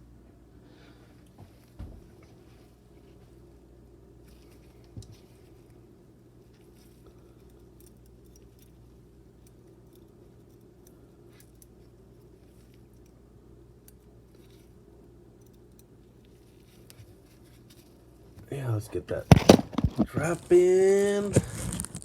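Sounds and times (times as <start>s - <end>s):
steady low hum: 0.0s - 22.0s
small metallic clinks: 6.8s - 13.2s, 15.3s - 17.0s.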